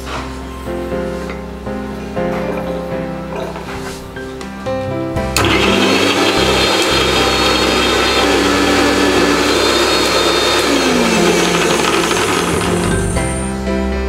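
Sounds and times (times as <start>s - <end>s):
mixer grinder running: 5.4s - 13.5s.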